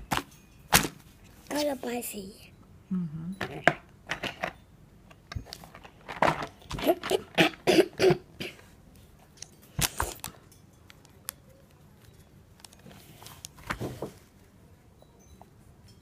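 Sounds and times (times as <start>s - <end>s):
person coughing: 6.8s - 8.7s.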